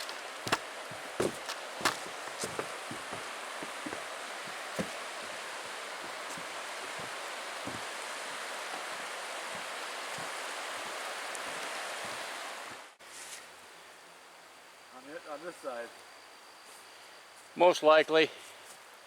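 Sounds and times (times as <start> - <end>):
river rushing: 0.0 - 12.8
soft low thumps: 0.5 - 7.9.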